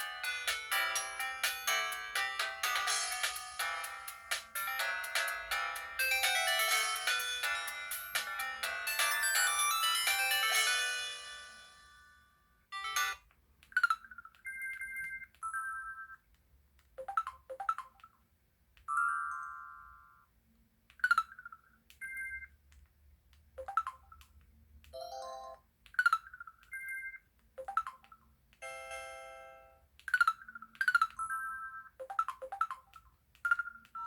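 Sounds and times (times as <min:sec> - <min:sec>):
phone ringtone melody: 0:00.0 - 0:11.9, 0:12.8 - 0:13.2, 0:18.9 - 0:20.2, 0:31.2 - 0:32.9.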